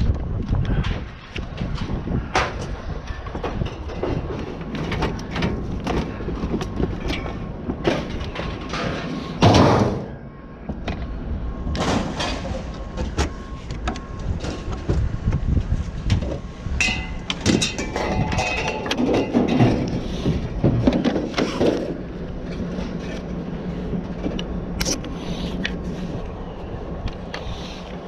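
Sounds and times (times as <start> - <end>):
knocks and clatter of handling: 0.7 - 10.0, 16.0 - 23.4
loud heavy clunk: 7.8 - 10.1.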